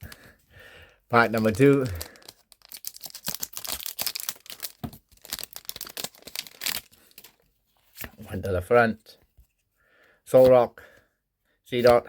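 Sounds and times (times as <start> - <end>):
foil wrapper tearing and crinkling: 1.2 - 7.4.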